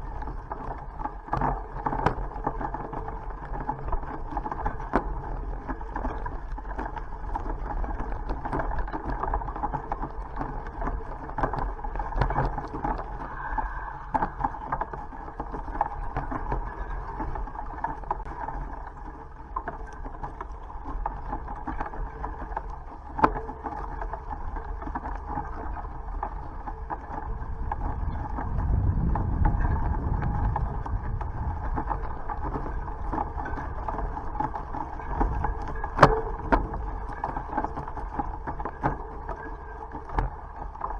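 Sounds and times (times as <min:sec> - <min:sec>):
bicycle rolling: 0:00.0 - 0:40.9
wind noise: 0:12.1 - 0:17.7, 0:25.7 - 0:37.2
heavy low rumble: 0:13.0 - 0:16.1, 0:27.2 - 0:34.3.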